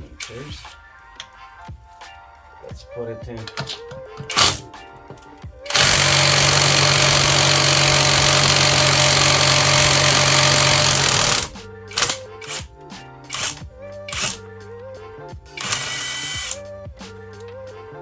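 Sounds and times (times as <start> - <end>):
impact driver hammering: 4.3 - 4.7, 5.7 - 12.6, 15.6 - 16.6.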